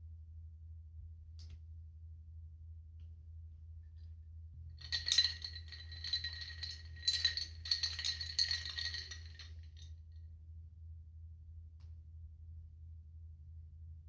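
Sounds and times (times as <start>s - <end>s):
rattling clinking clicks: 4.8s - 9.5s.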